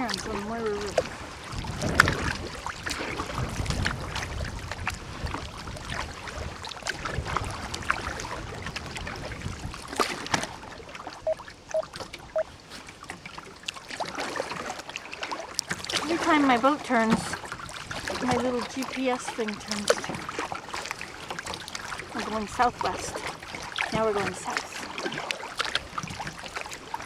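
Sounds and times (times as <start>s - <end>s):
water drips: 0.0s - 2.2s
water splashing off paddles: 0.0s - 11.3s, 12.0s - 27.0s.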